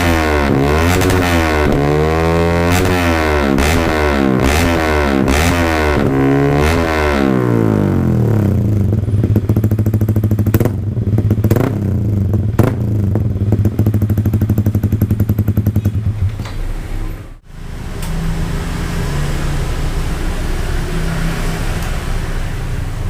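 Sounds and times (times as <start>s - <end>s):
motorcycle engine running: 0.0s - 16.4s.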